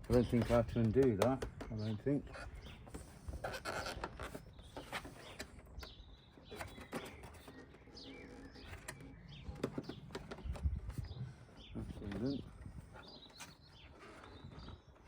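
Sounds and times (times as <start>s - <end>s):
plastic panel clicks and knocks: 0.0s - 2.0s
small birds chirping: 0.0s - 15.0s.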